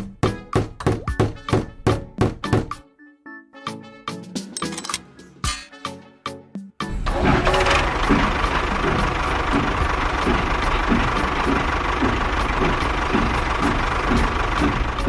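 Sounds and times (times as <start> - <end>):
small engine running: 6.9 - 15.0.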